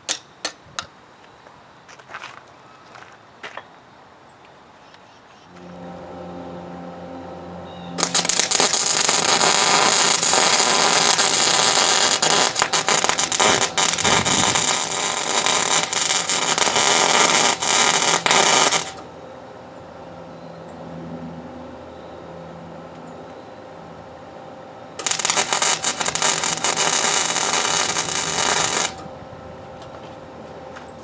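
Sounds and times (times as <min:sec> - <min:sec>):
low steady hum: 0:05.5 - 0:31.0
welding arc crackling: 0:07.0 - 0:19.1, 0:25.0 - 0:29.1.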